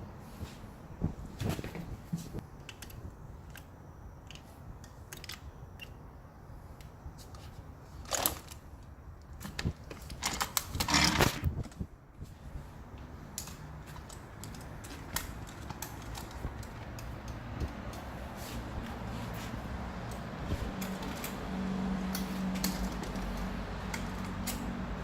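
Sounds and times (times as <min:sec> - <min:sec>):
scooter joint clicks and rattling: 0:02.6 - 0:06.0, 0:06.8 - 0:11.8, 0:13.2 - 0:19.0, 0:20.0 - 0:21.5, 0:22.1 - 0:24.8.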